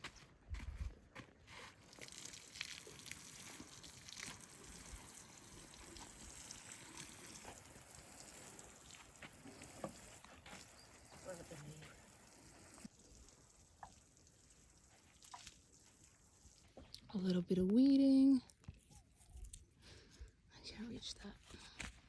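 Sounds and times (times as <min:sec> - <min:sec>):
water trickling onto soil: 0:01.6 - 0:16.8.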